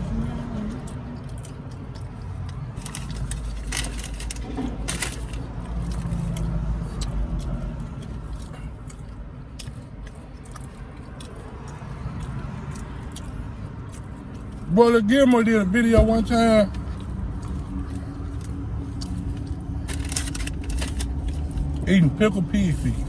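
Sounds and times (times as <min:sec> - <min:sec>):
steady low rumble: 0:15.7 - 0:23.0.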